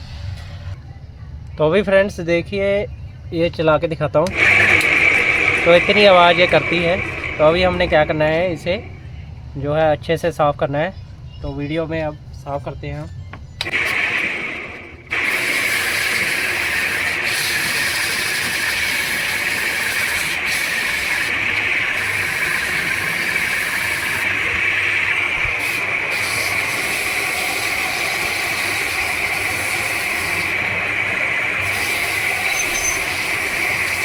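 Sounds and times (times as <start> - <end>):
sandpaper hissing on spinning shaft: 4.3 - 9.1, 13.7 - 34.0.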